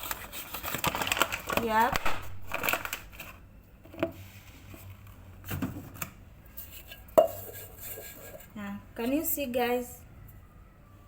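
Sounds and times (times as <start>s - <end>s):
flour rustling in metal pot: 0.0s - 1.9s, 6.5s - 8.6s.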